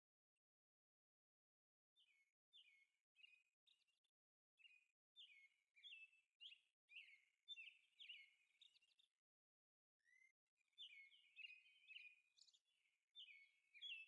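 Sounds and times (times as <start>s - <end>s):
faint bird chirping: 2.0s - 9.2s, 10.0s - 14.0s.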